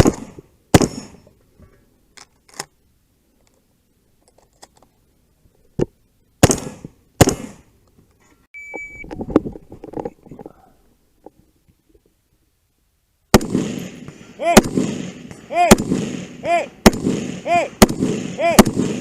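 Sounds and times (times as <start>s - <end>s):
loud gunshots: 0.0s - 1.2s, 6.4s - 7.6s, 13.3s - 19.0s
high ringing tone: 8.6s - 9.1s.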